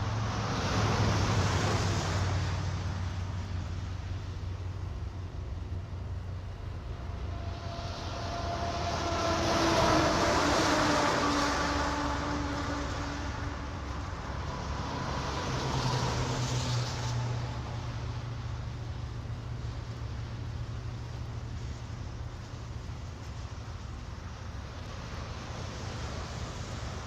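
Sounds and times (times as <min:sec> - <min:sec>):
vehicle passing by: 0:00.0 - 0:05.2, 0:06.5 - 0:19.0.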